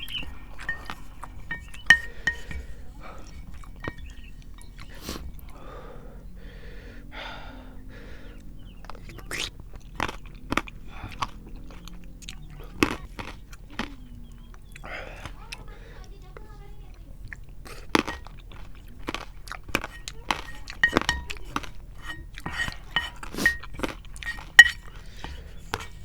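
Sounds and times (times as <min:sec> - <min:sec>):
utensil clinking on bowl: 0:00.0 - 0:05.0, 0:17.6 - 0:26.0
wet mouth sounds: 0:00.0 - 0:05.7, 0:08.8 - 0:15.7, 0:17.2 - 0:26.0
person chewing noodles: 0:00.0 - 0:06.7, 0:07.9 - 0:16.2, 0:17.0 - 0:26.0.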